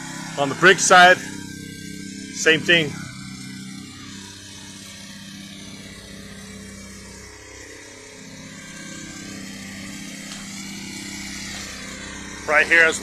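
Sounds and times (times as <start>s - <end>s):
pressure washer engine running: 0.0s - 13.0s.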